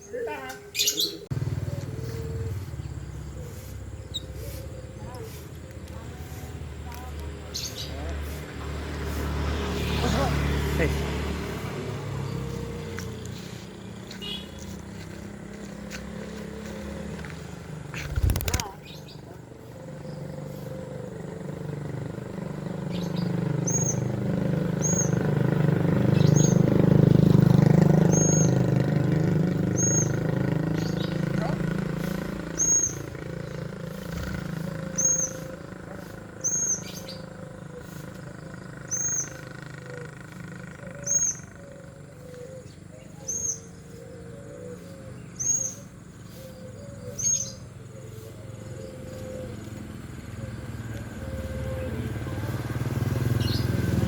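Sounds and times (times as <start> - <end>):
bird chirping: 0.0 - 8.2, 16.0 - 52.6, 53.2 - 54.0
vehicle engine passing: 0.0 - 54.0
lovebird shrill calls: 32.6 - 33.5, 34.9 - 35.4, 36.4 - 37.3.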